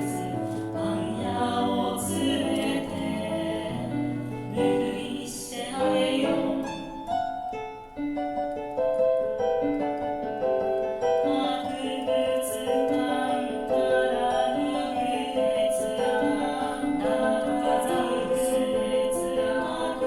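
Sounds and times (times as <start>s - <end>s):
choir singing: 0.0s - 7.1s, 11.2s - 20.0s
piano accompaniment: 0.0s - 20.0s.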